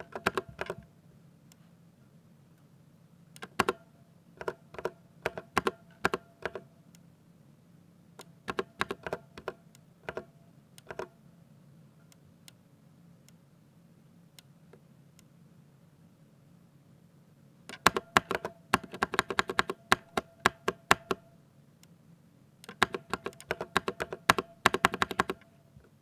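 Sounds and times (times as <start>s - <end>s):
mechanical keyboard keys clacking: 0.0s - 0.9s, 3.4s - 3.8s, 4.4s - 6.7s, 8.5s - 11.1s, 17.7s - 21.3s, 22.6s - 25.5s.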